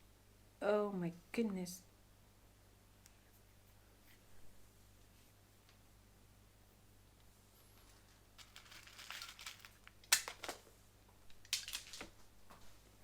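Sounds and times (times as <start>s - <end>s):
rustling of small parts: 7.5s - 12.9s.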